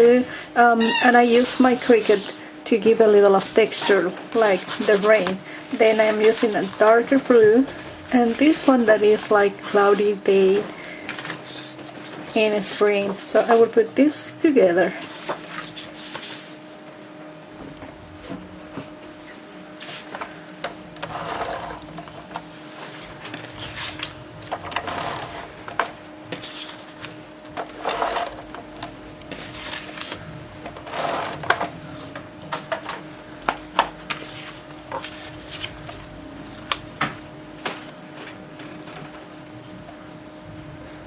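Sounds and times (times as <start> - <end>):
steady low hum: 0.0 - 41.0
paper rustling and scraping: 3.7 - 8.8, 15.0 - 16.8, 21.0 - 41.0.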